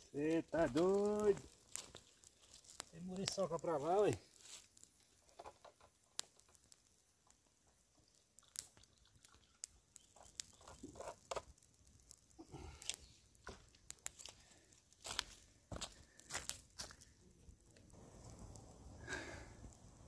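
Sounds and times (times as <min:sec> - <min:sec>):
faint crackles and clicks: 0:00.0 - 0:20.0
soft rustling: 0:00.4 - 0:05.4.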